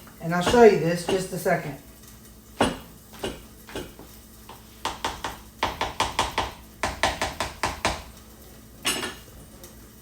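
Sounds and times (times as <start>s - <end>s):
utensil tapping against a bowl: 4.8s - 8.1s.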